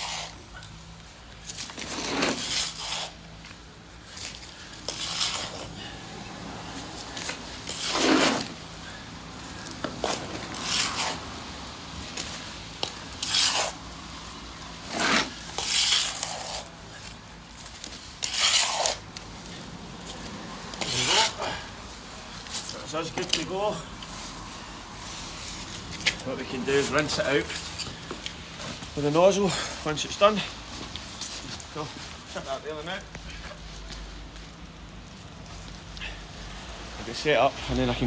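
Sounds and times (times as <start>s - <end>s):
trowel scraping mud: 0.0s - 0.5s, 1.6s - 3.3s, 4.2s - 24.4s.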